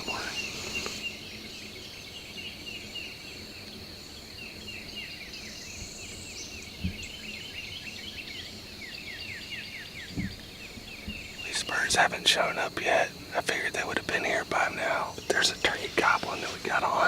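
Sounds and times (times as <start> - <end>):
bird chirping: 0.0 - 3.4, 4.1 - 17.0
faint high insect whine: 0.0 - 17.0
soft low thump: 10.1 - 10.4.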